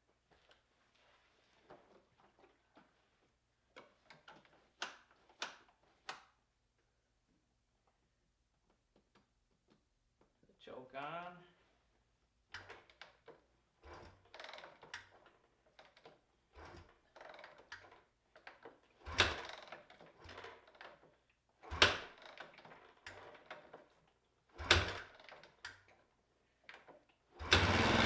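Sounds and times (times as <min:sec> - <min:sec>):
motorcycle engine kick-start thumps: 0:27.4 - 0:28.0.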